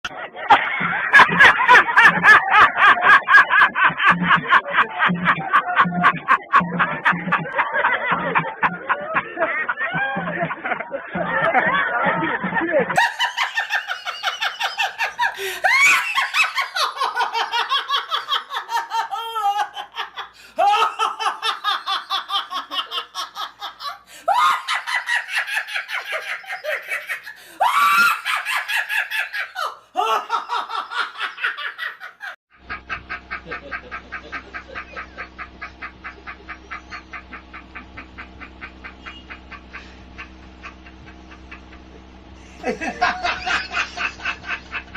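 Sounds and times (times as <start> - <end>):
pulsing laugh: 0.0 - 44.9
steady hum: 0.1 - 31.5, 32.5 - 44.9
high-pitched laughter: 0.1 - 40.3.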